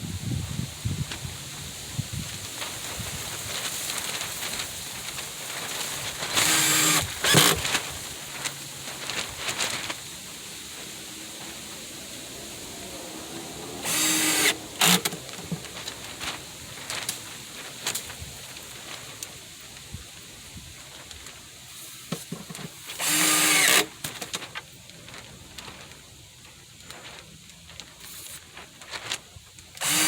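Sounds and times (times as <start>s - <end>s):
power drill driving screws: 6.3s - 7.9s, 13.8s - 15.6s, 22.9s - 24.1s, 29.8s - 30.0s.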